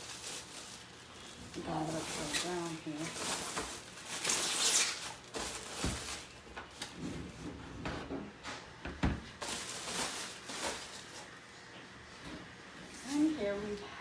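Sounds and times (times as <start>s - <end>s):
packaging scraping rustle: 0.0s - 7.4s, 9.3s - 11.4s
dull knocks and bumps: 7.8s - 9.3s.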